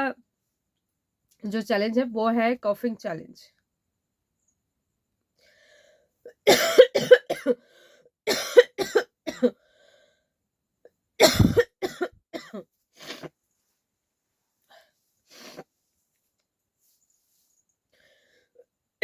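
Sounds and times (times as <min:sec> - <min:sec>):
person hacking coughs: 0:06.4 - 0:07.6, 0:08.3 - 0:09.5, 0:11.2 - 0:13.2.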